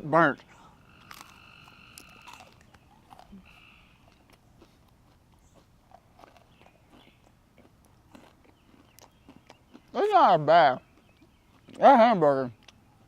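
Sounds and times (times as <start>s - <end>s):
frog calling: 0.8s - 2.5s, 3.4s - 4.0s
chewing crunchy food: 0.9s - 13.0s.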